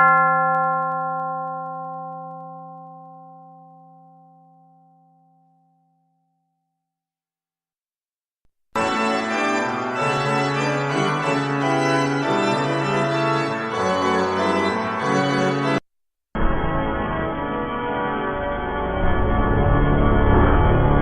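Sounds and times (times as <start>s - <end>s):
organ playing sustained chords: 8.8s - 15.8s.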